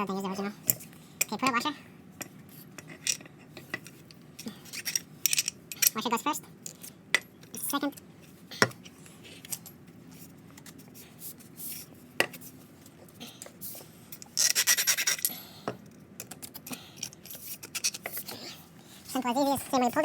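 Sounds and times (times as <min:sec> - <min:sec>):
small metal parts clinking: 0:02.8 - 0:07.3.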